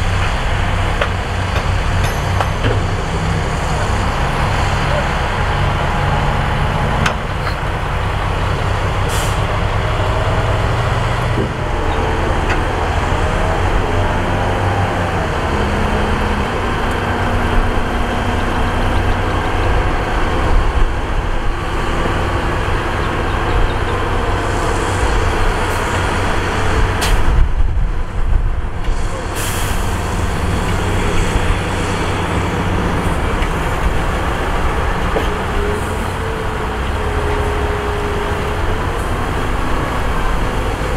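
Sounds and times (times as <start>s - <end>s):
diesel truck engine under load: 0.0s - 40.9s
air brake hisses: 9.1s - 9.5s, 28.9s - 30.1s.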